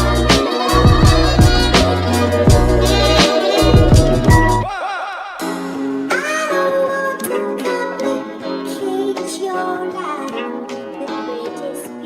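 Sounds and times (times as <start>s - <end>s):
plucked string accompaniment: 0.0s - 4.7s
person singing melody: 0.0s - 12.0s.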